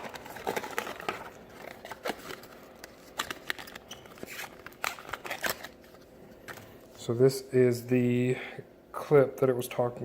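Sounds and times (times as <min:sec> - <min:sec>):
accessories and packaging handled: 0:00.0 - 0:06.9.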